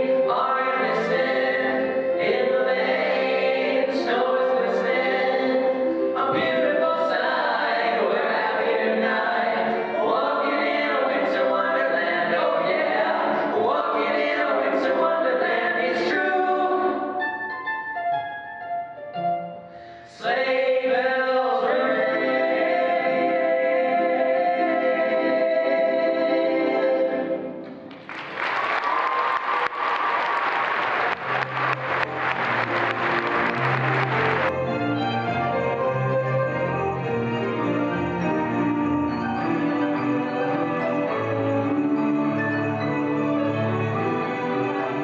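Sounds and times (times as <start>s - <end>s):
vocal group singing jazzy song: 0.0s - 17.2s, 20.0s - 27.6s
backing music: 0.0s - 20.1s, 29.9s - 45.0s.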